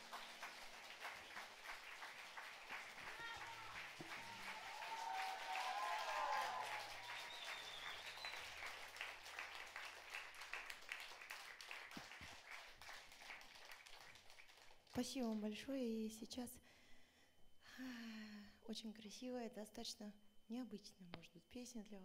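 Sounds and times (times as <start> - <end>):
audience applauding: 0.0 - 14.8.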